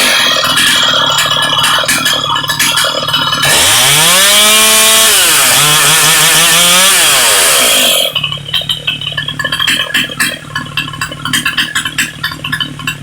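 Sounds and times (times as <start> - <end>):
chainsaw revving and cutting: 0.0 - 8.2.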